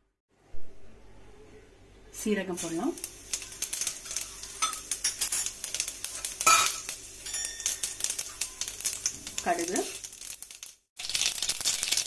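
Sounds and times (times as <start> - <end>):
seeds sizzling in hot oil: 2.2 - 12.0
spoon clinking and scraping pan: 3.4 - 9.7.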